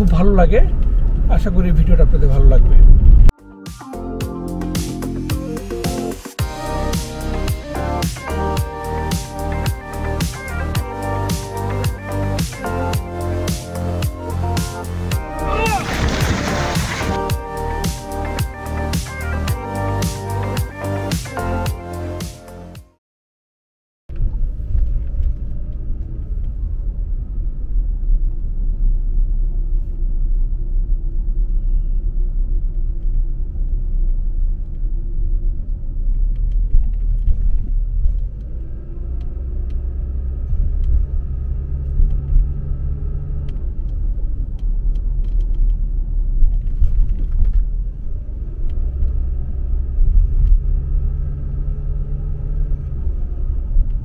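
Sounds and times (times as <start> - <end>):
car engine rumble: 0.0 - 22.7, 24.1 - 54.0
road noise: 0.0 - 22.8, 24.1 - 54.0.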